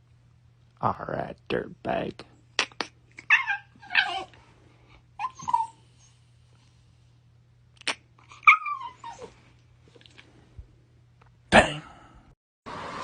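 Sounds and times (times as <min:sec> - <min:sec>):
dog whimpering: 0:03.2 - 0:04.4, 0:05.2 - 0:06.2, 0:08.2 - 0:09.4.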